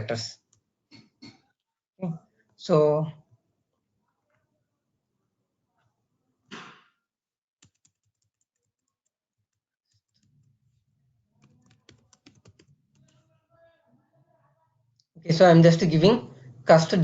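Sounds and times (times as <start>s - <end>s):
faint keyboard typing: 7.6s - 10.6s, 11.4s - 13.3s.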